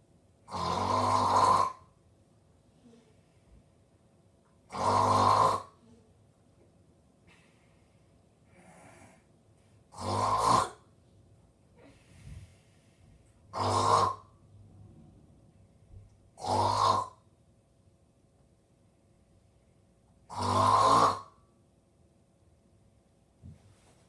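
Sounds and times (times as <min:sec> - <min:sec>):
loud rasping snores: 0:00.5 - 0:01.8, 0:04.7 - 0:05.8, 0:09.9 - 0:10.8, 0:13.5 - 0:14.3, 0:16.4 - 0:17.2, 0:20.3 - 0:21.3
faint breaths: 0:07.2 - 0:09.9, 0:11.7 - 0:13.5.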